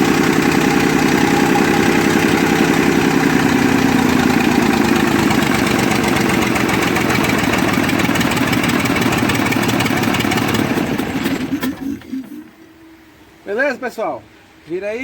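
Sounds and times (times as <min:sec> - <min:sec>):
diesel engine running: 0:00.0 - 0:12.8.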